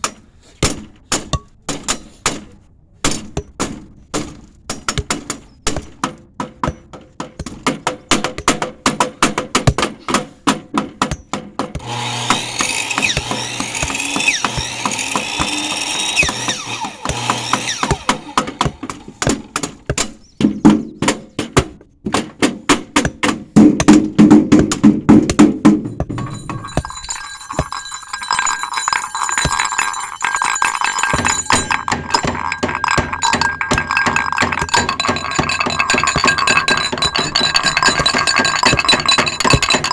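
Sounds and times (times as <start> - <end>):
power tools running: 11.8 - 19.6
rapid hammer blows: 11.8 - 20.2.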